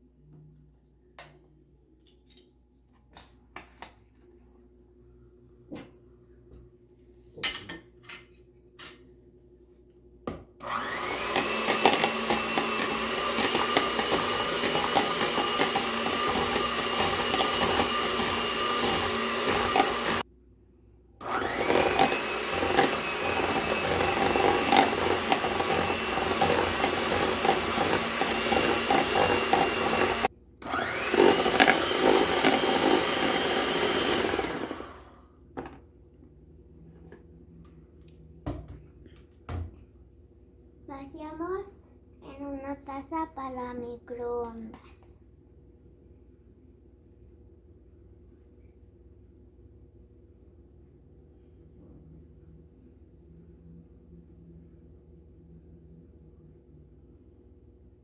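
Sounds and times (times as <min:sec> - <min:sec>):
electric mixer motor whine: 0:10.6 - 0:20.2, 0:21.2 - 0:35.3.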